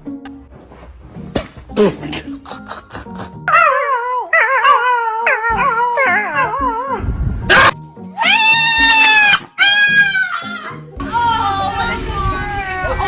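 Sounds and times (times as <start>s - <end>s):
dog howling: 3.5s - 10.8s
dog barking: 7.5s - 7.8s.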